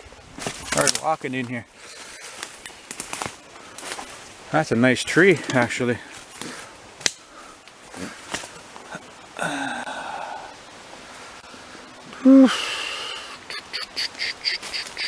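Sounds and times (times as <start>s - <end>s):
crackles: 0.3s - 11.5s
twigs snapping underfoot: 0.4s - 1.5s, 2.2s - 4.1s, 6.2s - 8.6s
person breathing hard: 9.4s - 13.4s.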